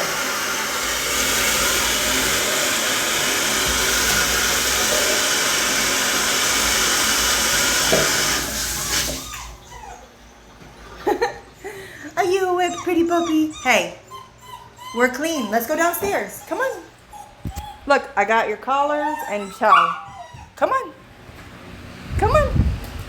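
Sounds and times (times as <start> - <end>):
hair dryer blowing: 0.0 - 9.3
puppy whimpering: 8.8 - 18.2, 18.9 - 20.7.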